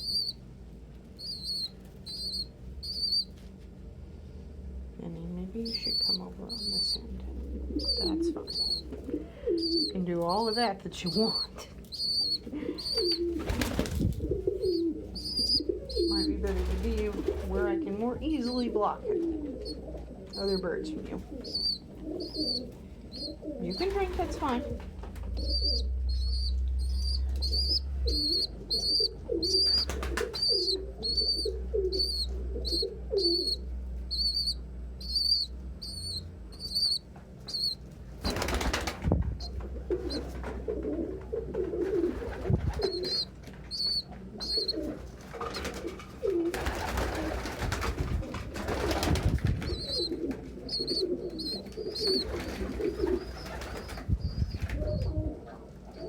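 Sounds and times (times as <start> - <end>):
high peeping: 0.0 - 3.6, 4.2 - 56.0
pigeons cooing: 5.7 - 56.0
wings flapping: 7.7 - 25.8, 26.4 - 33.5, 37.5 - 55.3.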